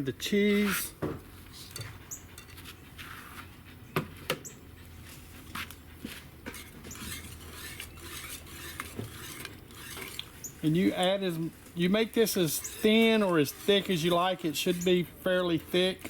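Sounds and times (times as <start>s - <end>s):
spoon stirring and scraping pot: 6.5s - 16.0s.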